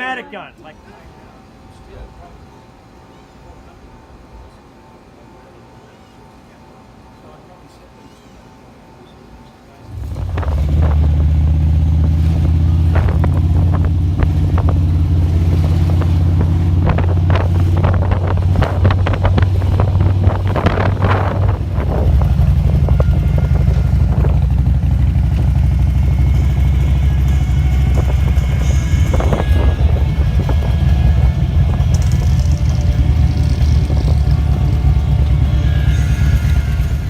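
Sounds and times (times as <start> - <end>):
motorcycle engines rumbling: 9.8 - 37.0
sharp engine crackles: 9.9 - 37.0.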